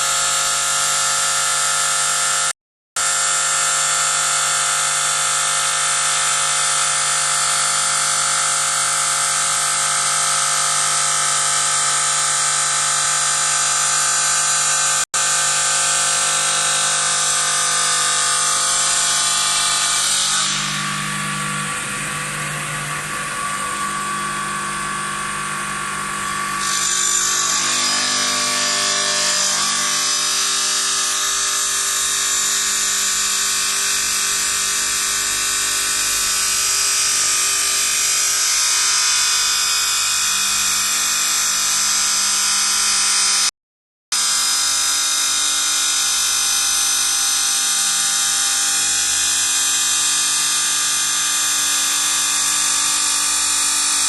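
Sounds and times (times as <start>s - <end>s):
saw blade grinding stone: 3.0s - 42.9s.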